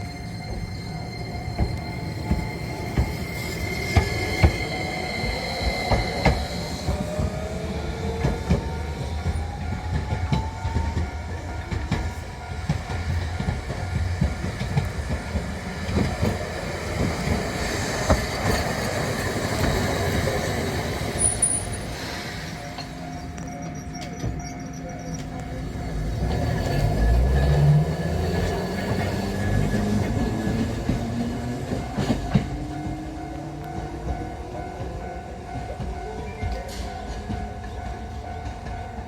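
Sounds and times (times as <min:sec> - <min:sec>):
streetcar motor whine: 0:00.0 - 0:39.0
wheels clacking over rail joints: 0:01.6 - 0:22.0.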